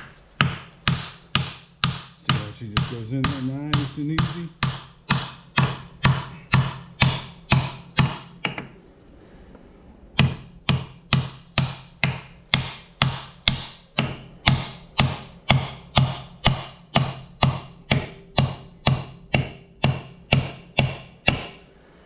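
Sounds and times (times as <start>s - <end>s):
plastic hammer tapping wood: 0.4s - 8.6s.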